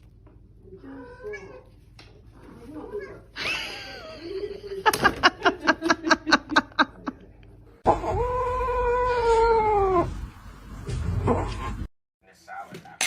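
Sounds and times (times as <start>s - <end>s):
cat long yowl: 7.9s - 10.2s.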